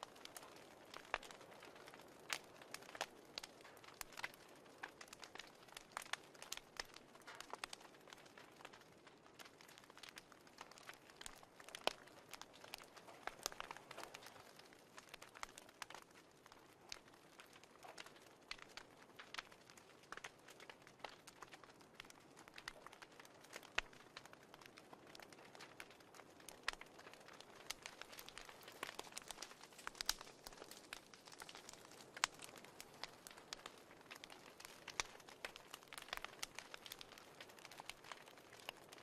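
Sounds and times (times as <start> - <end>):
wood fire crackling: 0.0 - 39.0.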